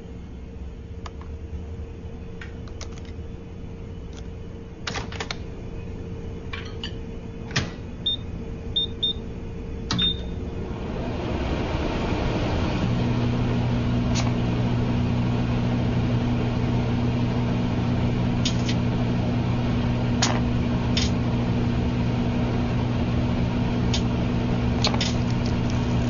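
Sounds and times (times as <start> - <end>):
microwave oven humming: 0.0 - 26.0
keypad beeps: 8.0 - 8.2, 8.8 - 9.2, 9.9 - 10.3.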